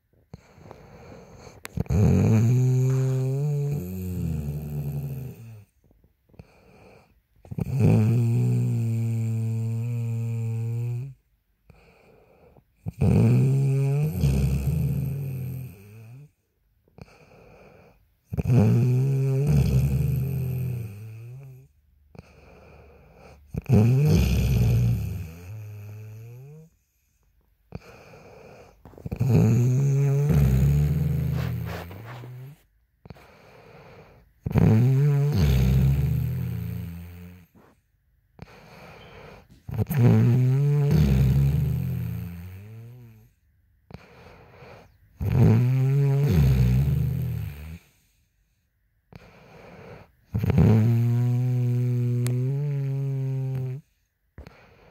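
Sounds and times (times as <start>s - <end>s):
soft breath: 0.0s - 1.8s, 26.6s - 34.4s, 37.4s - 39.7s, 43.2s - 45.2s, 47.8s - 50.3s, 53.8s - 54.9s
woman snoring: 0.2s - 5.7s, 6.3s - 16.3s, 17.0s - 26.8s, 27.7s - 37.7s, 38.4s - 43.3s, 43.9s - 48.0s, 49.1s - 54.9s.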